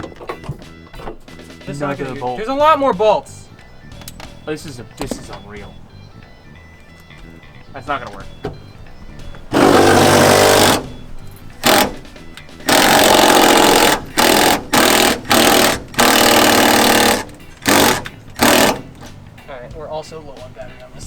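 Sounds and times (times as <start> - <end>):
impact wrench hammering: 9.5 - 19.3.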